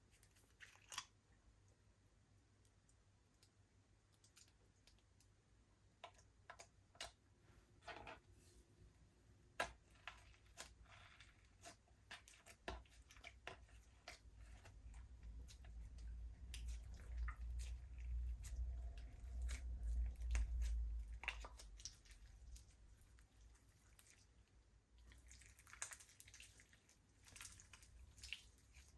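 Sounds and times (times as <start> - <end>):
slime squelching: 0.0 - 1.3, 9.5 - 28.9.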